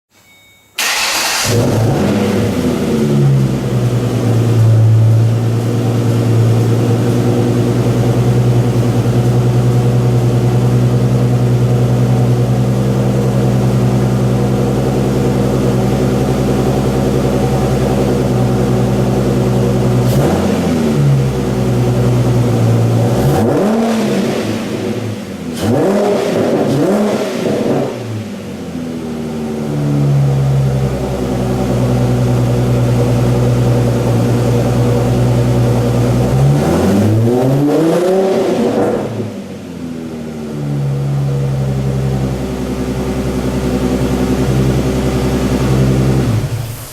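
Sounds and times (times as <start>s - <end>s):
car engine idling: 0.8s - 26.0s, 26.8s - 37.3s, 38.9s - 46.9s
car engine revving: 0.8s - 46.9s.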